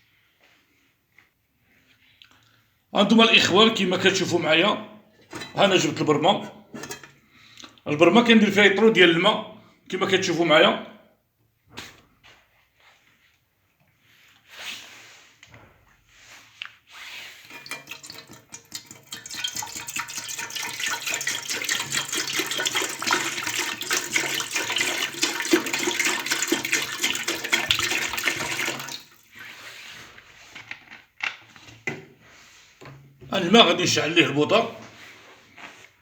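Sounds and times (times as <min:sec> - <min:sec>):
water running into a pot: 0:17.4 - 0:29.6.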